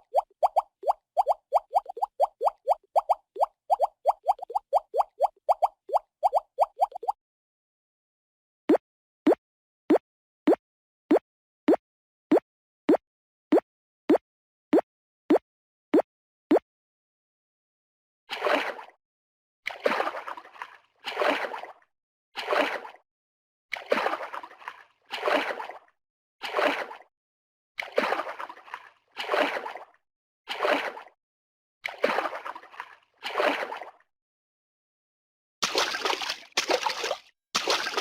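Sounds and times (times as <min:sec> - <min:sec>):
water sloshing and splashing: 0:18.3 - 0:19.0, 0:19.7 - 0:21.8, 0:22.4 - 0:23.0, 0:23.7 - 0:27.1, 0:27.8 - 0:31.2, 0:31.8 - 0:34.1, 0:35.6 - 0:38.0.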